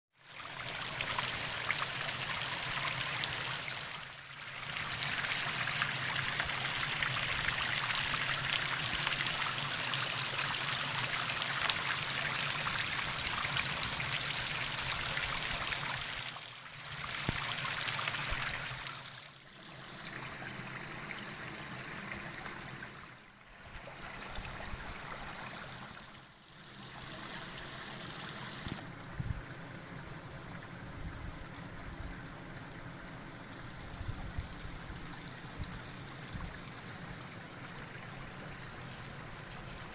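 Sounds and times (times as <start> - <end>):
spring water trickling: 0.2 - 28.8.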